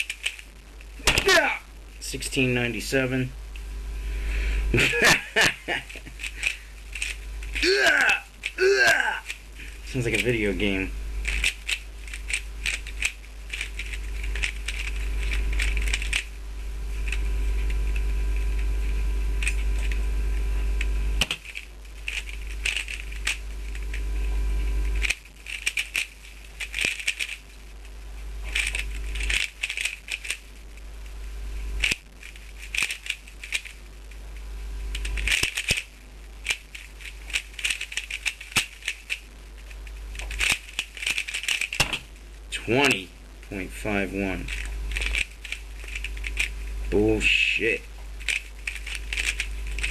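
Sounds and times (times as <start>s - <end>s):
speedcube plastic clacking: 0.0s - 0.5s, 5.8s - 7.6s, 11.2s - 16.3s, 21.2s - 23.9s, 25.0s - 27.5s, 28.5s - 30.5s, 31.8s - 33.8s, 34.9s - 42.1s, 44.4s - 46.5s, 48.0s - 49.9s.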